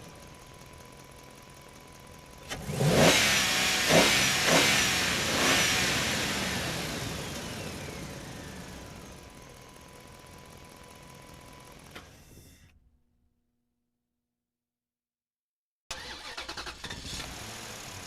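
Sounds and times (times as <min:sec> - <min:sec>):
car engine revving: 0:02.4 - 0:09.4, 0:15.9 - 0:18.0
car driving off: 0:02.4 - 0:09.7, 0:15.9 - 0:18.0.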